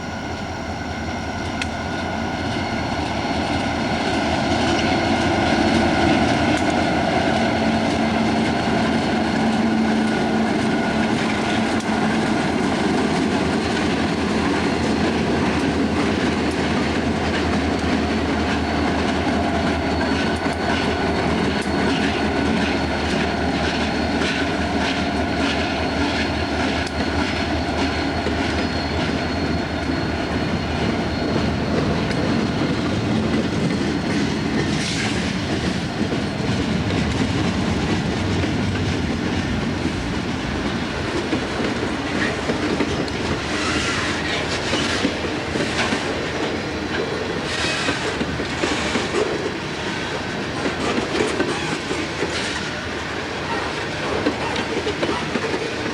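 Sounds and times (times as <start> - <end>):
railroad cars rumbling: 0.0 - 55.9
train wheels clicking over rail joints: 2.4 - 55.9
high-pitched wheel squeal: 18.3 - 35.4, 42.1 - 52.8.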